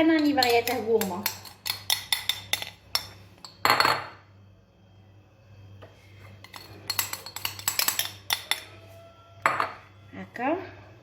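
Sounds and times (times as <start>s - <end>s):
utensil clinking on a dish: 0.0s - 4.1s, 6.4s - 9.8s
utensil scraping a dish: 6.2s - 9.0s.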